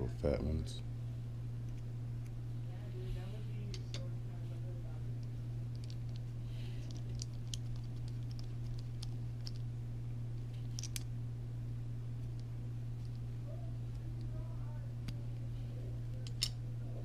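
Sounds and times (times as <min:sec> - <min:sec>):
low electrical hum: 0:00.0 - 0:17.0
clicks of small metal parts handled: 0:06.9 - 0:09.6, 0:10.6 - 0:11.1, 0:16.2 - 0:16.6.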